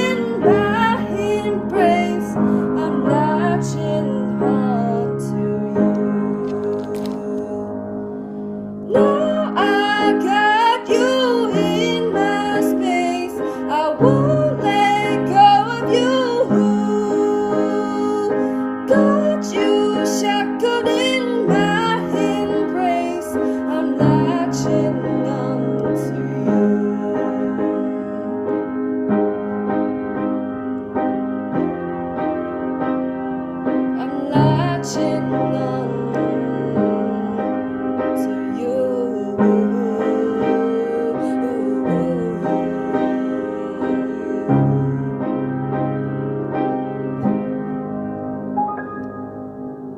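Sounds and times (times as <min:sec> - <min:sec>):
person singing: 0:00.0 - 0:08.1, 0:08.9 - 0:28.8, 0:34.0 - 0:45.8
piano chords: 0:00.0 - 0:49.9.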